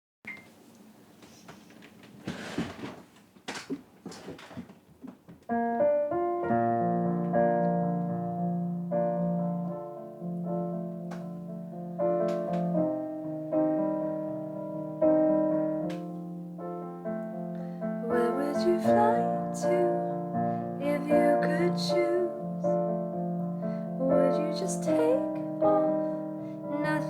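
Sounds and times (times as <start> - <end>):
rustling and knocks: 0.4 - 5.8
piano playing slow chords: 5.6 - 27.0.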